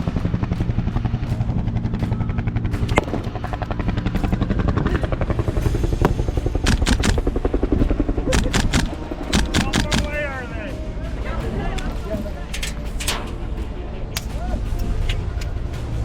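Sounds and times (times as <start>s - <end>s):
helicopter rotor beating: 0.0s - 16.0s
sharp cracks: 6.1s - 7.4s, 8.3s - 10.4s.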